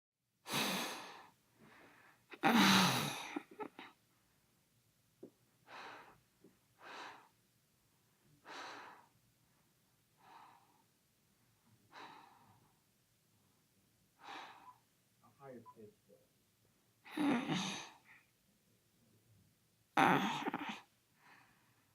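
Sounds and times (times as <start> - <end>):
boy breathing: 0.5 - 3.5, 5.6 - 7.4, 8.4 - 9.2, 10.2 - 10.9, 11.9 - 12.8, 14.2 - 14.8
boy grunting: 17.1 - 17.8, 20.0 - 20.8.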